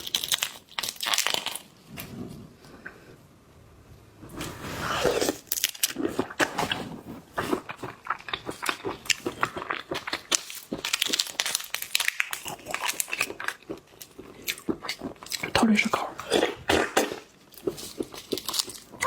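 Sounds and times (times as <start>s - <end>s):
crunching and cracking shells: 0.0s - 1.8s, 5.3s - 6.6s, 7.6s - 15.4s, 16.9s - 19.0s
person slurping: 4.6s - 9.4s.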